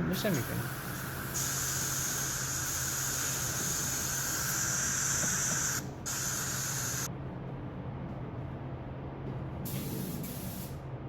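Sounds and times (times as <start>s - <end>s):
spray paint hissing: 0.1s - 7.1s, 9.7s - 10.8s.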